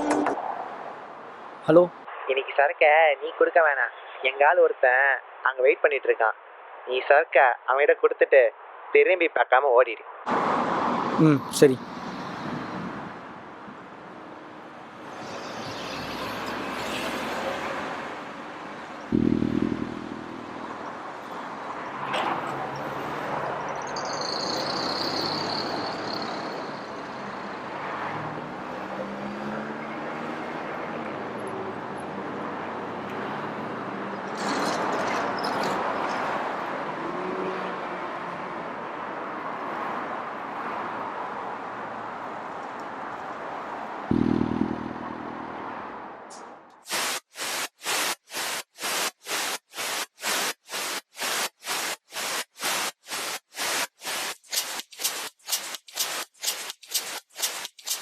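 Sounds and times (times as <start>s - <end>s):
vehicles passing: 0.0s - 2.1s, 10.2s - 46.9s
loud pitched horn blast: 19.1s - 20.8s.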